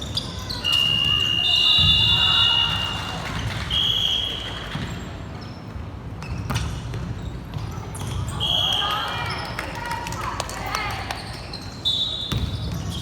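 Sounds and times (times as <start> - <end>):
short whistle blast: 0.6 - 3.0, 3.7 - 4.5
steady whistle tone: 0.6 - 3.1, 3.7 - 4.5.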